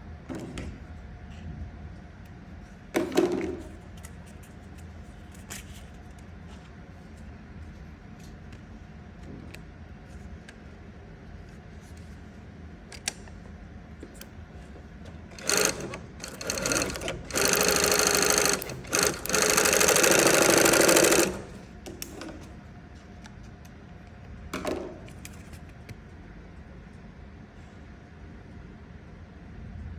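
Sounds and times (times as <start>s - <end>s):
sewing machine stitching: 15.3s - 22.3s.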